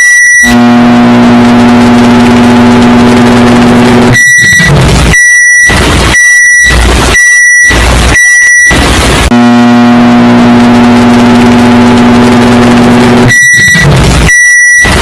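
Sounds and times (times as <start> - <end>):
microwave beeper beeping: 0.0 - 15.0
low rumbling: 0.5 - 15.0
microwave oven humming: 0.6 - 4.1.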